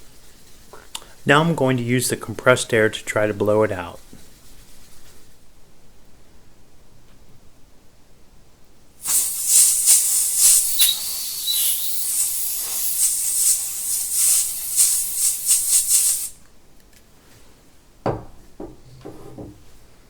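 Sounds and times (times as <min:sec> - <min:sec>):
compressed air hissing: 0:00.0 - 0:03.0, 0:09.0 - 0:16.4
knock: 0:18.0 - 0:19.6.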